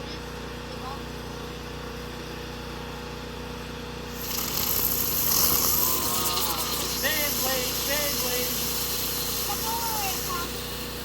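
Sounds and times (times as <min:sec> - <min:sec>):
loud high hiss: 0:04.1 - 0:11.0.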